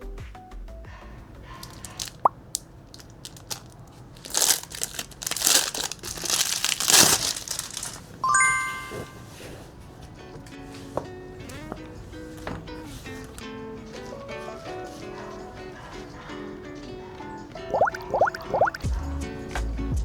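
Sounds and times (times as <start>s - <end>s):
light background music: 0.0s - 2.2s, 8.2s - 20.0s
plastic packaging crinkling: 1.6s - 8.2s
bright chime: 8.2s - 9.5s.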